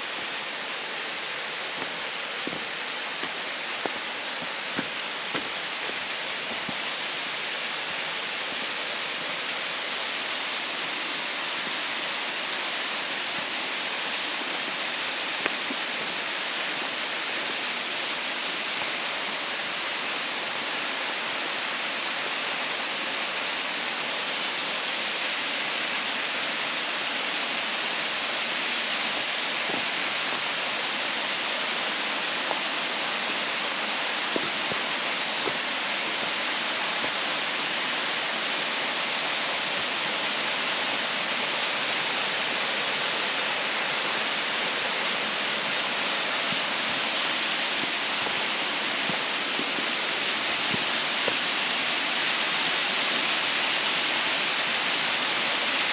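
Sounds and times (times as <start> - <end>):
waterfall rushing: 0.0 - 55.9.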